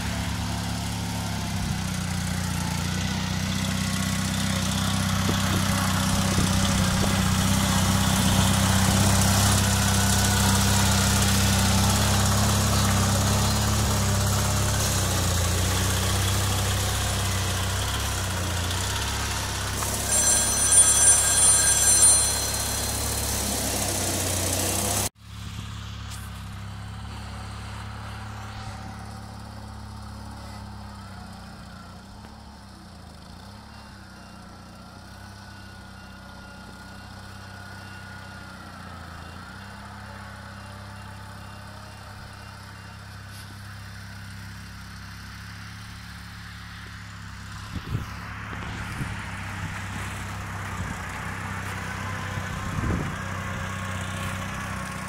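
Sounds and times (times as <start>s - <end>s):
garden tractor engine running: 0.0s - 55.0s
high-pitched whine: 17.3s - 29.7s.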